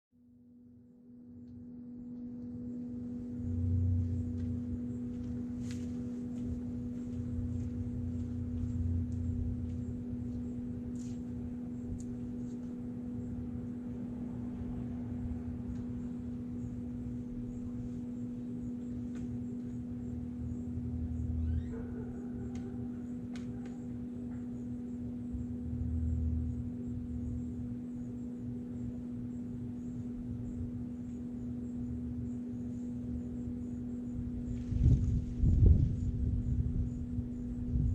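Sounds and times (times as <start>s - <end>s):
steady single-pitched hum: 0.2s - 37.9s
pulsing low rumble: 0.7s - 37.9s.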